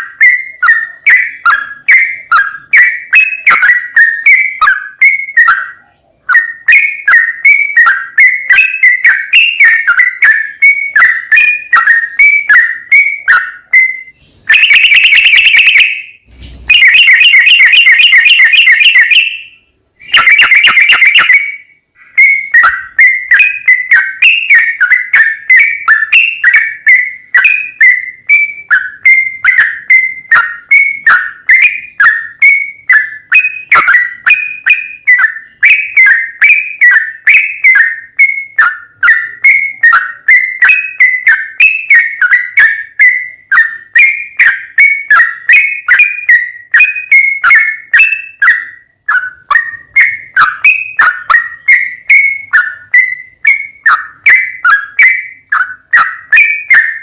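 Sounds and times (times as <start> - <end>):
bird short chirps: 0.0 - 37.8
bird rolling trills: 20.0 - 57.0.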